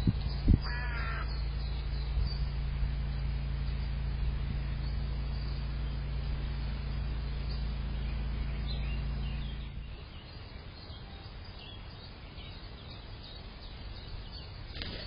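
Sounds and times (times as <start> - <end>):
steady low hum: 0.0 - 15.0
crow cawing: 0.6 - 1.4.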